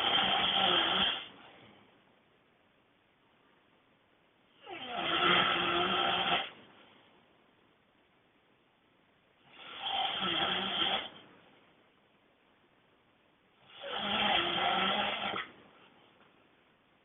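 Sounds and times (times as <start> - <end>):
person snoring loudly: 0.0 - 1.3, 4.6 - 6.6, 9.5 - 11.2, 13.6 - 15.5.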